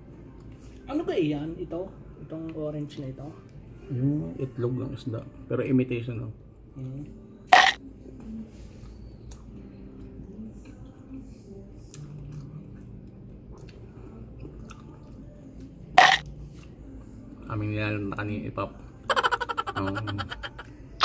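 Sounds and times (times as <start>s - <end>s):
person chewing food: 11.9s - 15.4s.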